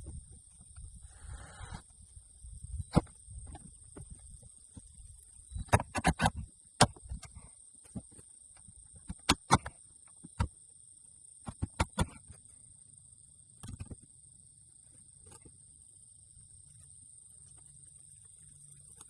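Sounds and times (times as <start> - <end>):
high-pitched insect trill: 0.0 - 5.7, 12.2 - 19.0.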